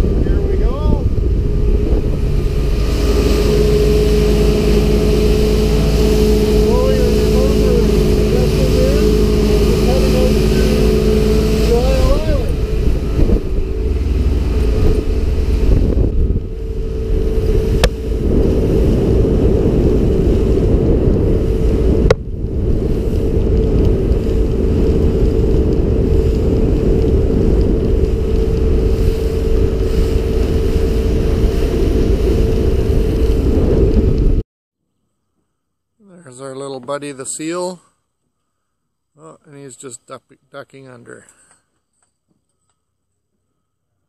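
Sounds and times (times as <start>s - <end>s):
water rushing: 0.0s - 33.6s
boat engine drone: 0.0s - 34.4s
wind buffeting microphone: 0.0s - 34.4s.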